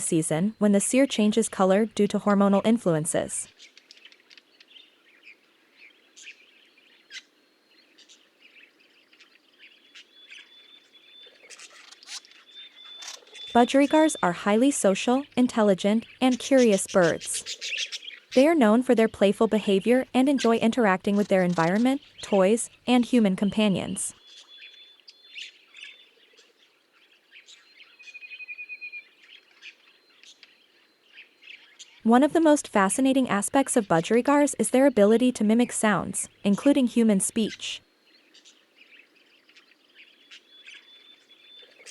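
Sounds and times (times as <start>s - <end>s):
budgerigars chirping: 1.2s - 32.0s, 37.3s - 41.9s.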